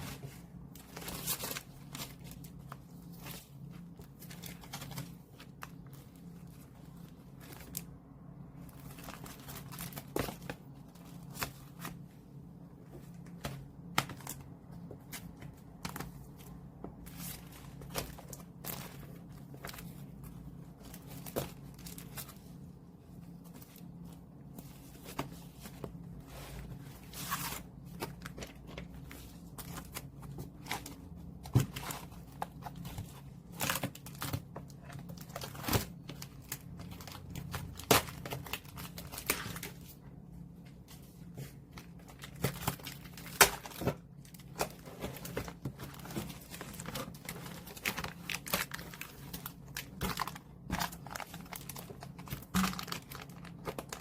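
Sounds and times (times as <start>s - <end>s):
low steady hum: 0.0s - 54.0s
wrapping crinkling and tearing: 31.6s - 40.0s, 41.8s - 54.0s.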